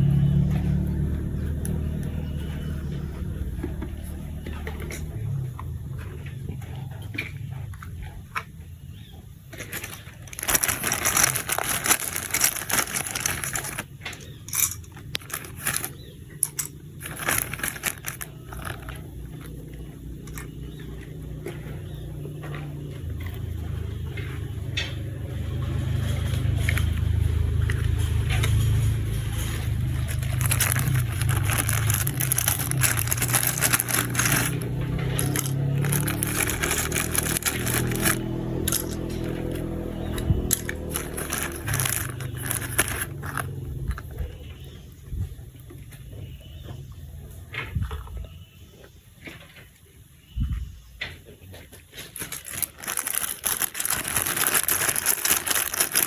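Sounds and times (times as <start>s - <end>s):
plastic parts clicking: 9.5s - 19.6s, 29.3s - 44.1s, 52.0s - 56.0s
plastic packaging crinkling: 9.6s - 20.6s, 26.4s - 43.6s, 51.9s - 56.0s.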